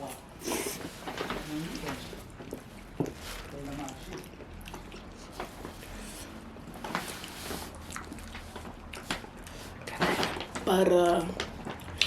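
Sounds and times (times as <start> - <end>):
wet chewing: 2.2 - 6.1, 7.0 - 10.0.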